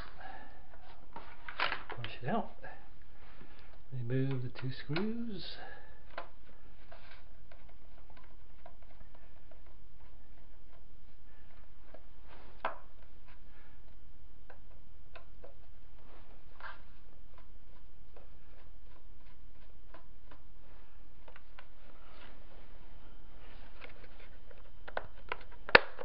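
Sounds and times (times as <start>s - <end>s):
steady low hum: 0.0s - 26.0s
plastic parts clicking: 0.7s - 2.2s, 3.5s - 15.7s, 21.2s - 21.7s, 23.7s - 26.0s.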